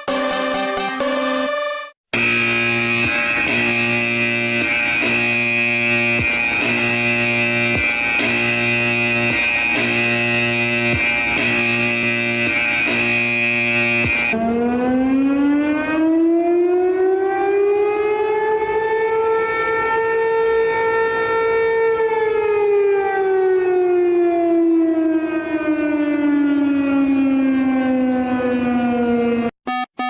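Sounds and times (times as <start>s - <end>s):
siren wailing: 2.2s - 20.2s.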